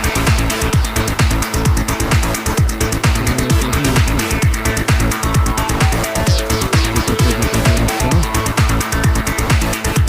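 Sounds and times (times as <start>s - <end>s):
electronic dance music: 2.6s - 9.1s.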